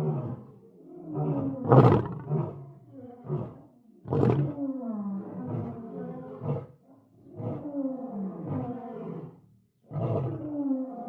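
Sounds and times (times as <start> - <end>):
lion roaring: 0.0 - 11.0.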